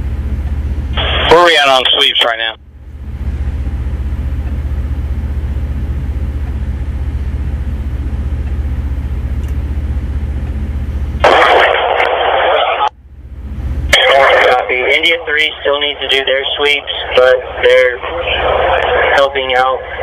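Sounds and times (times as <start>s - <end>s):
two-way radio static hiss: 1.0s - 2.6s, 11.2s - 12.9s, 13.9s - 20.0s.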